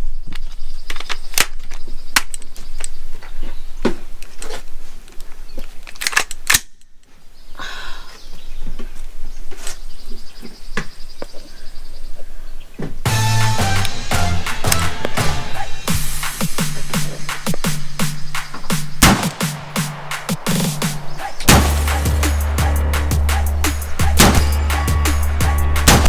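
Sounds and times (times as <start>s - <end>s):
electronic music with heavy beat: 13.1s - 26.0s
gunshots: 18.8s - 26.0s.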